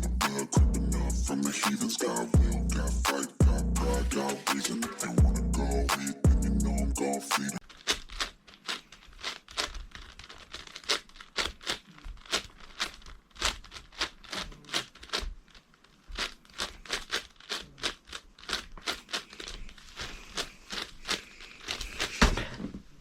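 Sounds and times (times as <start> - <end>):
puzzle cube plastic clicks: 7.6 - 22.2.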